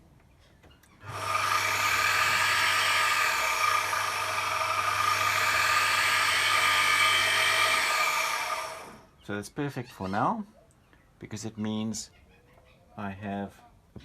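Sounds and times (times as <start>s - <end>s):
milling machine spindle motor whine: 1.0s - 9.0s.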